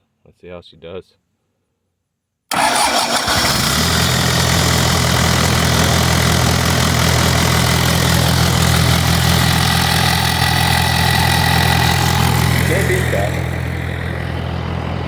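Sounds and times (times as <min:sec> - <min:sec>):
diesel engine idling: 0:02.5 - 0:15.0.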